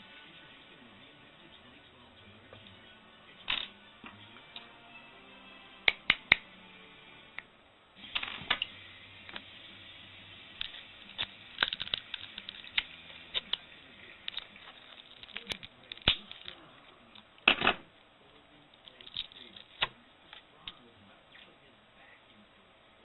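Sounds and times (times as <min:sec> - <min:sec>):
small plastic parts snapping: 0:10.6 - 0:13.6, 0:14.2 - 0:16.6.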